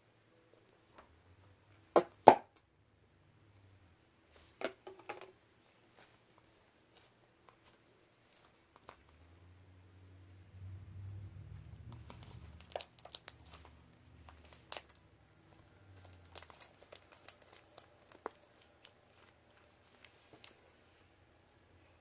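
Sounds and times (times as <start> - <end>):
slime squishing and popping: 11.9 - 20.6.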